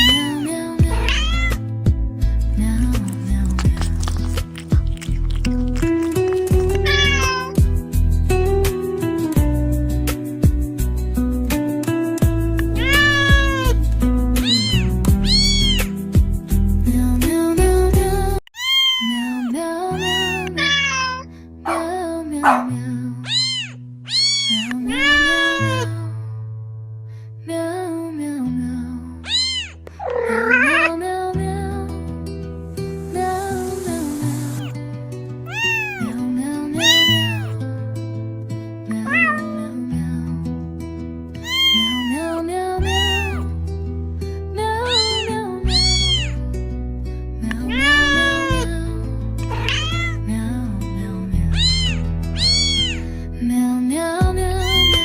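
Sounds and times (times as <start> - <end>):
cat meowing: 0.0 - 1.6, 6.2 - 7.6, 12.6 - 13.8, 14.4 - 15.9, 18.6 - 21.9, 22.5 - 25.9, 29.2 - 31.0, 34.6 - 34.8, 35.5 - 37.6, 39.0 - 39.7, 41.4 - 43.5, 44.8 - 46.4, 47.6 - 48.7, 49.5 - 50.3, 51.4 - 53.1, 54.6 - 55.0.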